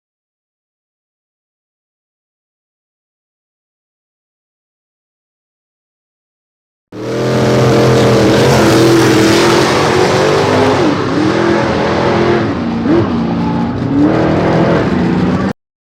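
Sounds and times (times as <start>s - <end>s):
car engine at high revs: 7.0s - 15.5s.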